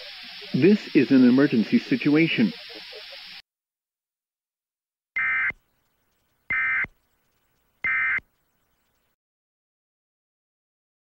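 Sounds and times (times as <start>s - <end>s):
short buzzing data bursts: 5.2s - 5.6s, 6.5s - 6.9s, 7.8s - 8.2s.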